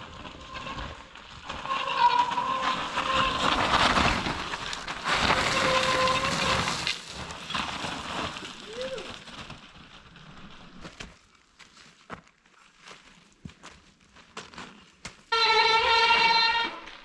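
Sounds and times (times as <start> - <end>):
tyres rattling on rough trail: 0.0 - 11.0
bike brakes squealing: 1.7 - 7.6.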